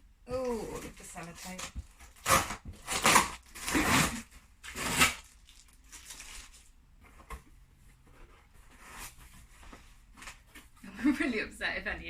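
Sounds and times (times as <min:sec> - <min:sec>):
tape ripping off cardboard: 0:00.4 - 0:06.7
cardboard rustling: 0:00.6 - 0:11.1.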